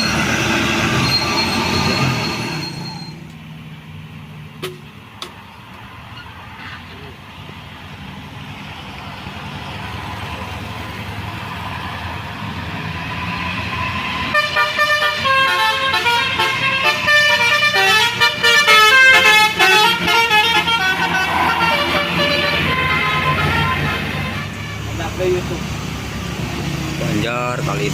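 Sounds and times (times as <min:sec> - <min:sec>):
bus engine and road noise: 0:00.0 - 0:27.9
musical bus horn: 0:14.3 - 0:25.3.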